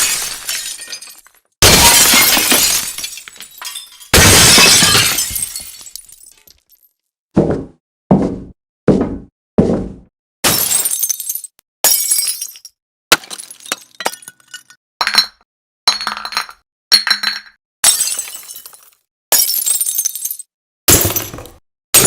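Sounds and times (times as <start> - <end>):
glass smashing: 0.0 - 6.9, 10.4 - 14.7, 17.8 - 22.0.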